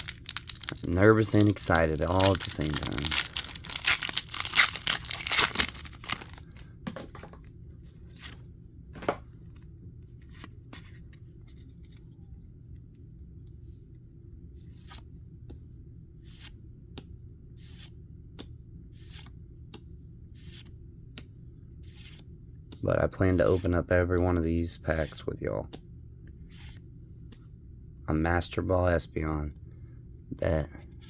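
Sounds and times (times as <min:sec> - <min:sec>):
foil wrapper tearing and crinkling: 0:00.0 - 0:06.5.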